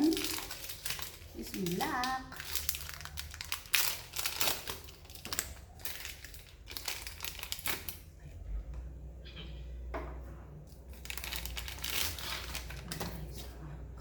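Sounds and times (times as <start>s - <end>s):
plastic packaging crinkling: 0.0s - 8.1s, 10.8s - 13.5s.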